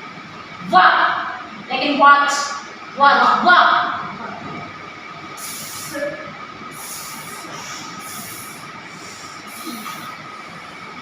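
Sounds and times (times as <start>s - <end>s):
faint hum: 0.0s - 11.0s
short high hissing: 5.4s - 6.0s.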